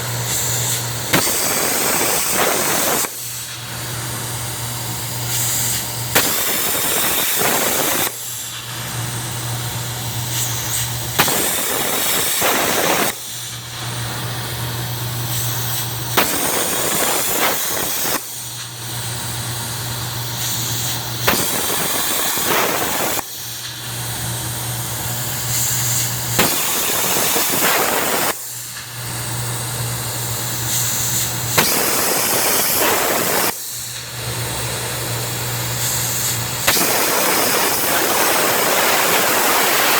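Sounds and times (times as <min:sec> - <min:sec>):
machine hissing: 0:00.0 - 0:39.9
sharp machine click: 0:35.8 - 0:39.9.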